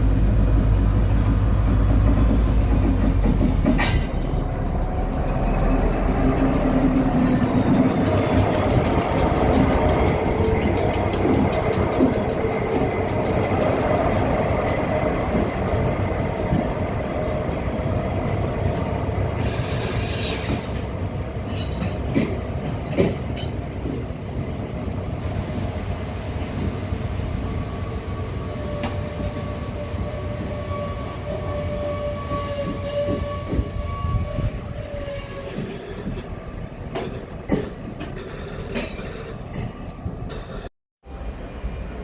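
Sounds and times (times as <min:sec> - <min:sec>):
wheels clicking on track: 0:00.0 - 0:25.6
train rumbling: 0:00.0 - 0:42.0.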